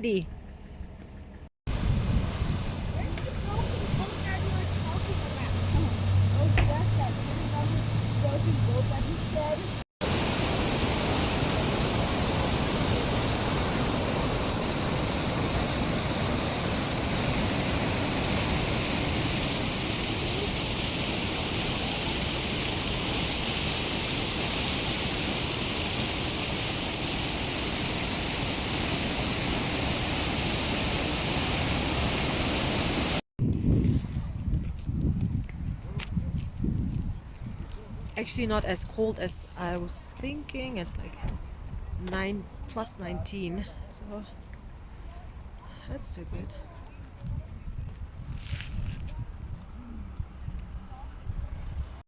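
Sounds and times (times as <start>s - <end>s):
water rushing loudly: 1.7s - 33.2s.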